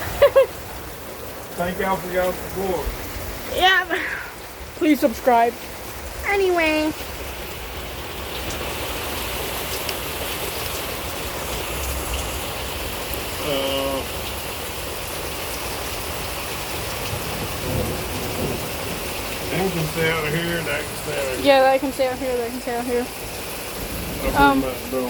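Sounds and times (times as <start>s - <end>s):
steady rain falling: 0.0s - 25.0s
short vocal sound: 13.4s - 14.1s.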